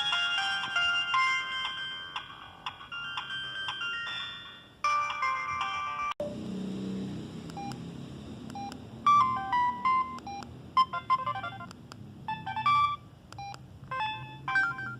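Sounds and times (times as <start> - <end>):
mobile phone beeping: 8.5 - 14.9.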